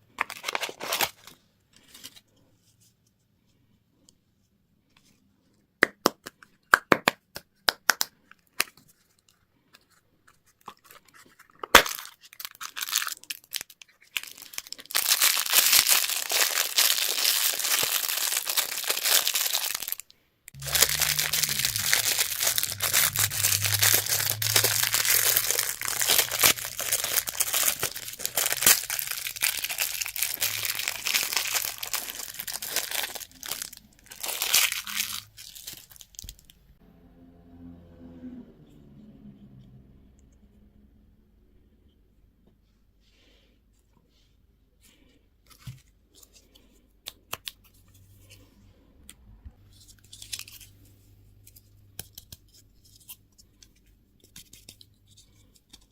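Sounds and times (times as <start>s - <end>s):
candy wrapper crinkling: 0.0s - 2.2s, 10.4s - 36.6s, 49.7s - 50.8s
low steady hum: 20.5s - 35.8s.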